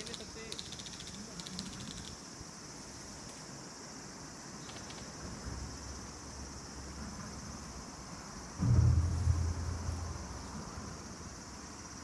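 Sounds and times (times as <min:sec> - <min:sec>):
faint outdoor background noise: 0:00.0 - 0:12.0
insects trilling: 0:00.0 - 0:12.0.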